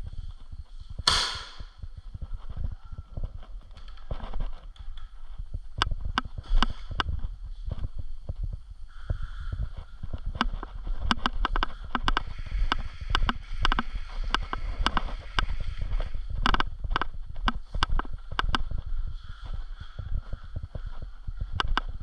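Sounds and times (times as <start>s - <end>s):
sharp clicks and knocks: 1.0s - 1.7s, 10.1s - 15.5s, 16.4s - 18.6s
steady low rumble: 4.7s - 22.0s.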